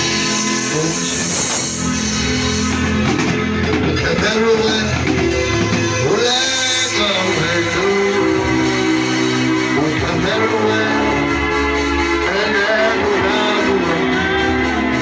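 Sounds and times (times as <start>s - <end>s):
person singing: 0.0s - 2.0s, 6.0s - 15.0s
sustained instrumental chords: 0.0s - 15.0s.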